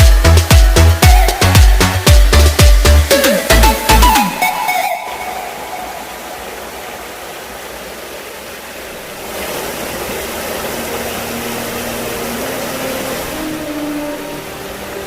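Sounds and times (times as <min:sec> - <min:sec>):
stream rushing over rocks: 0:00.0 - 0:15.0.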